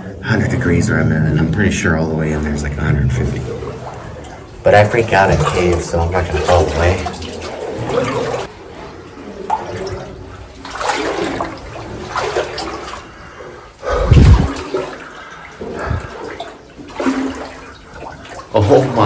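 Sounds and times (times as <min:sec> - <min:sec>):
water sloshing and splashing: 0:00.0 - 0:19.0
loud low thump: 0:13.9 - 0:14.6.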